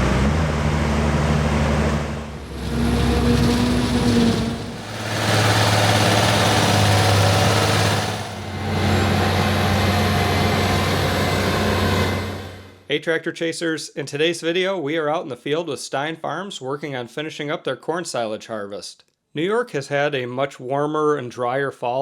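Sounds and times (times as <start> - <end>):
diesel farm machinery engine drone: 0.0 - 12.8.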